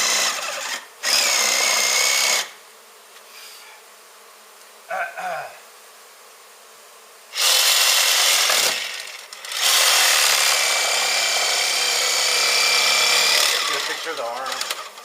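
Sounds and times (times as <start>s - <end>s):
power tool cutting into wall: 0.0s - 2.6s, 7.3s - 15.0s
faint bee hum: 0.0s - 15.0s.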